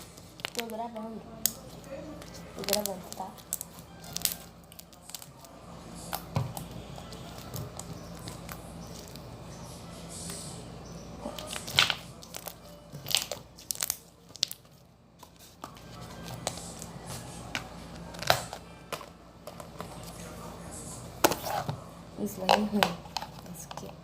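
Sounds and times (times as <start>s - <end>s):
slime crackling and popping: 0.0s - 1.6s, 2.6s - 5.3s, 11.4s - 14.6s.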